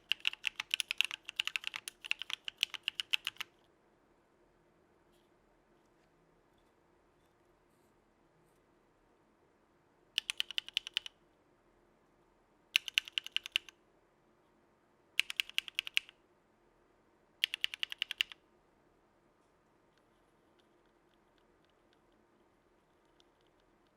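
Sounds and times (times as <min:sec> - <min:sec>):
mechanical keyboard typing: 0:00.0 - 0:03.5, 0:10.2 - 0:11.1, 0:12.8 - 0:13.7, 0:15.2 - 0:16.2, 0:17.4 - 0:18.4.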